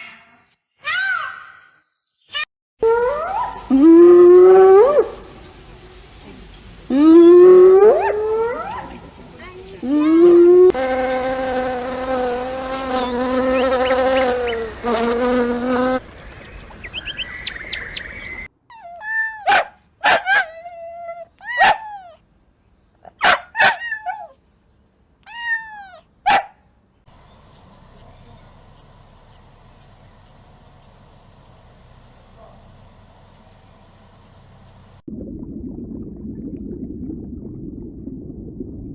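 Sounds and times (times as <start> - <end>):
cricket chirping: 3.4 - 9.5, 27.1 - 35.0
long steady animal call: 10.0 - 19.5, 20.4 - 22.2, 25.3 - 26.1, 27.1 - 35.0.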